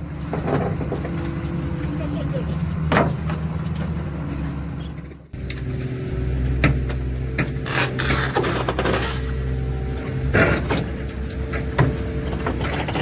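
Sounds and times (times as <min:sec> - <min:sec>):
diesel engine droning: 0:00.0 - 0:13.0.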